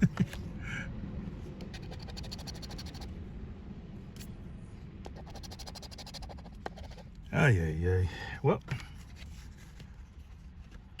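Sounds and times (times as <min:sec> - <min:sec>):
scratching lottery ticket coating: 0:01.6 - 0:03.1, 0:05.1 - 0:07.0.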